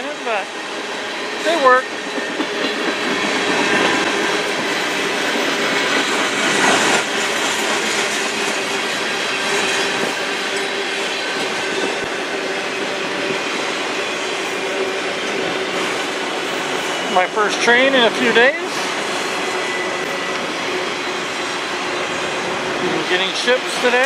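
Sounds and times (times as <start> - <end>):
train wheels rolling on rails: 0.0 - 24.0
high wheel squeal: 12.6 - 17.9, 18.8 - 22.4.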